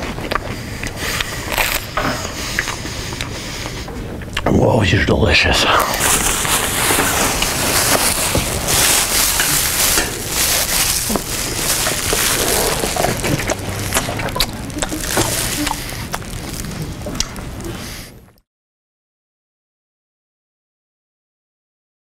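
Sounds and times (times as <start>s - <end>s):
chewing crunchy food: 0.0s - 4.5s, 5.9s - 18.2s.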